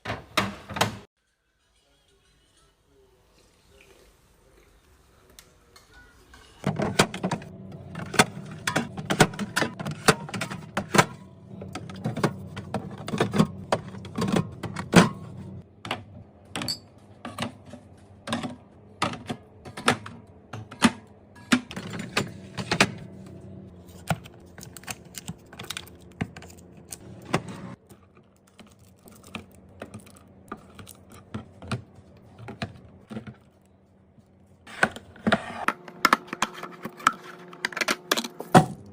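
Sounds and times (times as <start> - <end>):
containers clattering: 6.6 - 33.5
fridge hum: 6.6 - 38.9.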